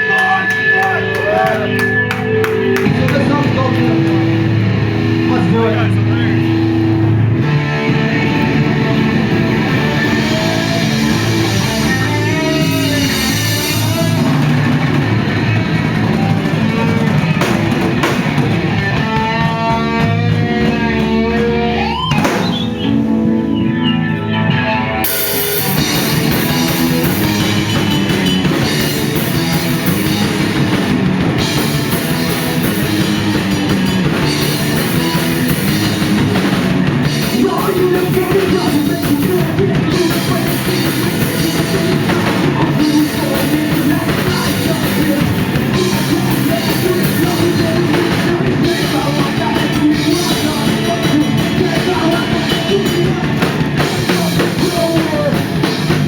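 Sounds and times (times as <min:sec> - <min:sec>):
bass guitar: 0:00.0 - 0:56.0
drum kit: 0:00.0 - 0:56.0
electric guitar: 0:00.0 - 0:56.0.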